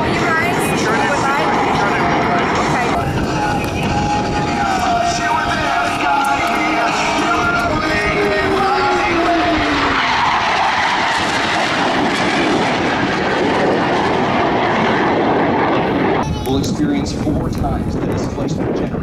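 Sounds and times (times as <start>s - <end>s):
jet whine falling in pitch: 0.0s - 17.0s
jet engine roar: 0.0s - 19.0s.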